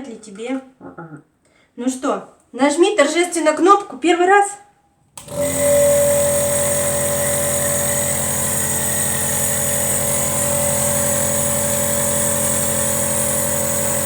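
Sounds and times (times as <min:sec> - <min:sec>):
nebulizer compressor humming: 0:05.2 - 0:14.0.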